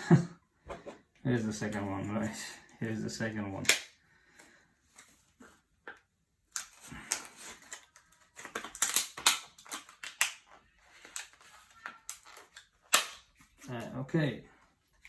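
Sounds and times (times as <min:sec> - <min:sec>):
plastic and metal clicks and scrapes: 0:05.9 - 0:13.8.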